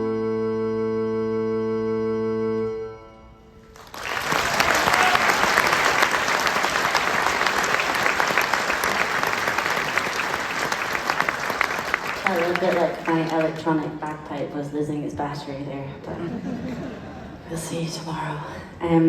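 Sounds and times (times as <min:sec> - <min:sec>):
electronic bagpipe drone: 0:00.0 - 0:03.6
audience applause: 0:03.7 - 0:13.8.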